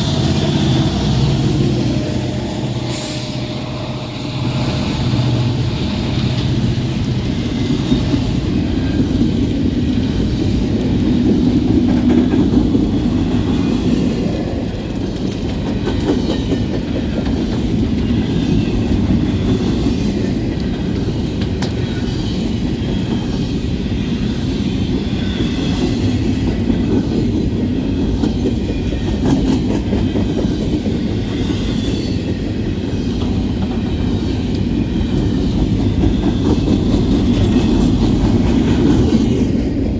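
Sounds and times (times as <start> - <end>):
freight train cars rolling: 0.0 - 39.9
wheels clicking over rail joints: 14.2 - 24.1.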